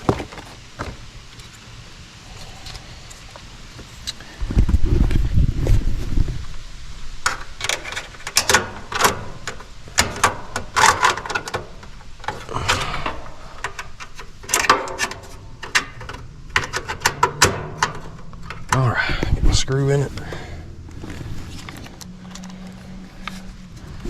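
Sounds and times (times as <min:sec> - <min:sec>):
low rumble: 0:16.2 - 0:24.0.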